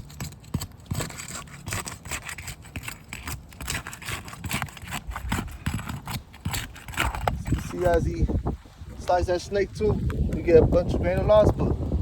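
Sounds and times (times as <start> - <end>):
sealant tearing: 0.0 - 8.0
scraping under shingles: 0.0 - 11.6
grit grinding on shingles: 0.0 - 12.0.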